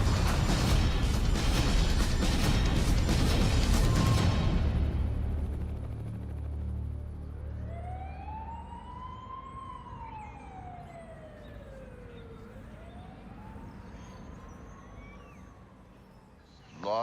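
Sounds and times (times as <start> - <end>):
tornado siren wailing: 3.5 - 16.6.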